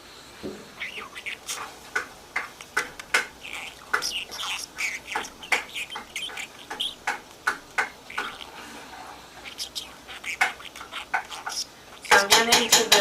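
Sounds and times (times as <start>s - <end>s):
budgerigar chirping and warbling: 0.8s - 1.7s, 2.4s - 8.6s, 9.4s - 12.8s
sharp clicks: 5.1s - 8.4s.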